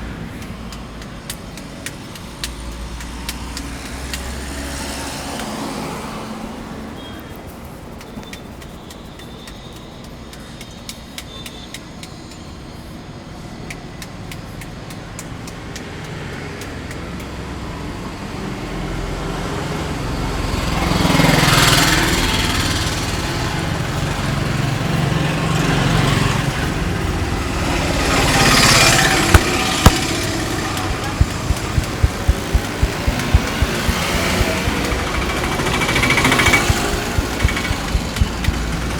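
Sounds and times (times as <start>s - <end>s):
vehicles passing: 0.0s - 9.0s, 27.1s - 38.9s
faint small clicks: 7.0s - 12.5s.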